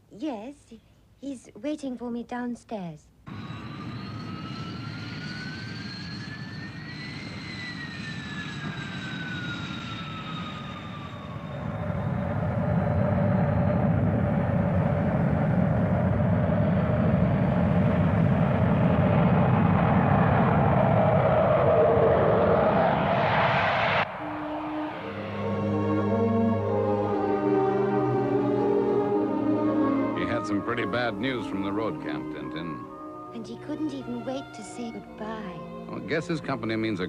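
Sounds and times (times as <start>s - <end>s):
jet roar: 3.3s - 33.8s
jet engine whine: 3.3s - 37.0s.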